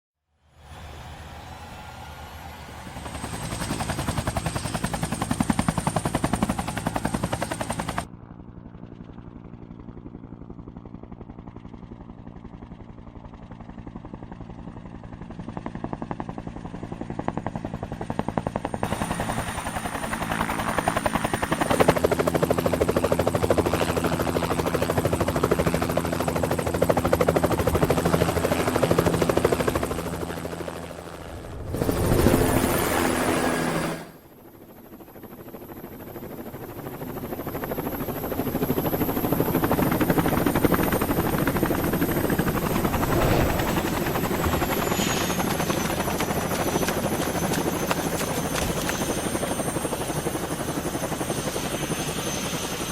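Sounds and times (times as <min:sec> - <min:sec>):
helicopter rotor beat: 0:00.5 - 0:52.9
high turbine whine: 0:37.5 - 0:52.9
engine hum: 0:40.8 - 0:49.4.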